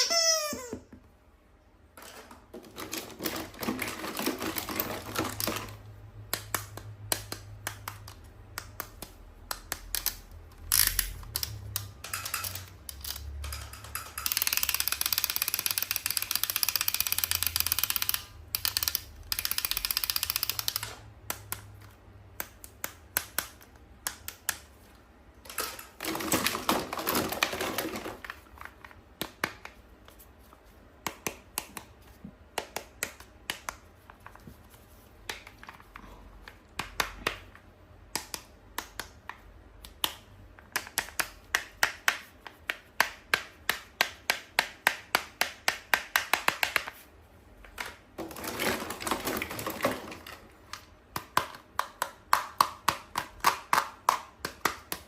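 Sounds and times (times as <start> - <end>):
toys clicking and tapping: 2.0 - 24.8, 31.0 - 34.0, 35.2 - 47.0, 49.4 - 55.0.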